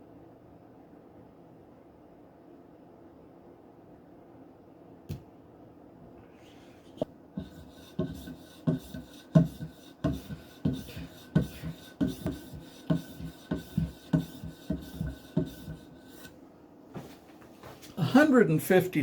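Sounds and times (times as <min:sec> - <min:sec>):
knife scraping on strop: 0:07.4 - 0:16.4.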